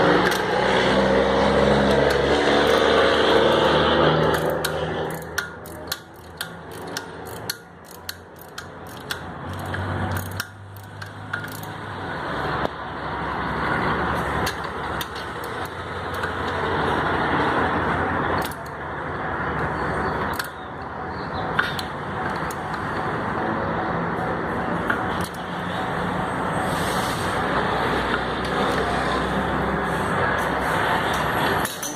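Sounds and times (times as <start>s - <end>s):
metallic clicks of tools: 0.2s - 0.5s, 4.2s - 11.8s, 14.4s - 16.6s, 18.4s - 18.8s, 20.2s - 20.6s, 24.9s - 25.4s.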